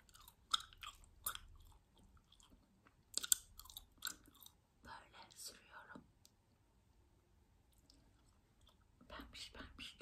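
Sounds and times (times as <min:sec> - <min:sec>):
gum chewing mouth clicks: 0:00.0 - 0:04.6.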